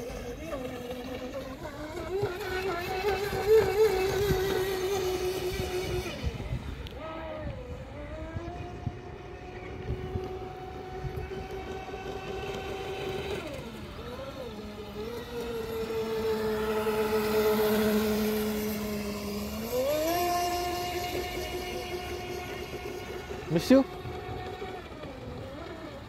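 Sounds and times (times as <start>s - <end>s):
small electric motor whining: 0.0s - 26.0s.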